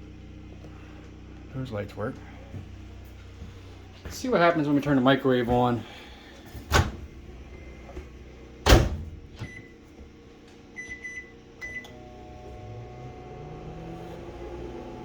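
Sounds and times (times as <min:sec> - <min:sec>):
microwave humming: 0:00.0 - 0:15.0
keypad beeps: 0:10.8 - 0:11.9.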